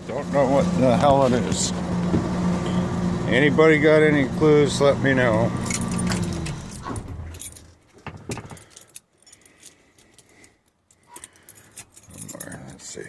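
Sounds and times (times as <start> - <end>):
light clicks and rattles: 5.6 - 12.9.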